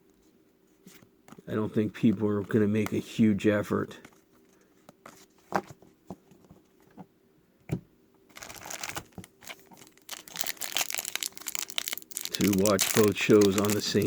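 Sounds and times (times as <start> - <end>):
card pack wrapper crinkling: 8.3 - 14.0
trading cards clicking: 11.6 - 14.0.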